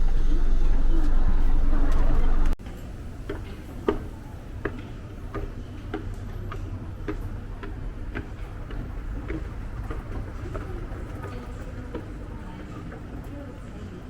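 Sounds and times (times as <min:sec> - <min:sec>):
steady low rumble: 0:00.0 - 0:03.2, 0:05.2 - 0:12.5.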